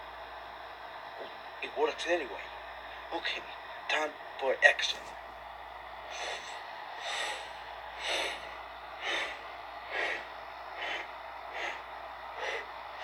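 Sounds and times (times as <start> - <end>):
person huffing breaths: 6.1 - 13.0.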